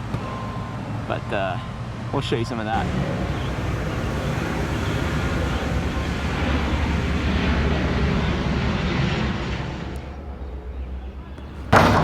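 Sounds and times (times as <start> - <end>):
engine rumble passing by: 2.8 - 9.5.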